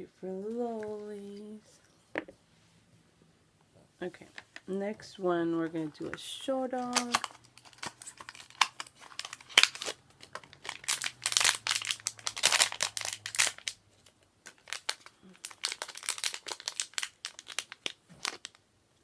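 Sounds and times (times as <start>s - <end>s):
wrapper crinkling and tearing: 6.8s - 18.6s.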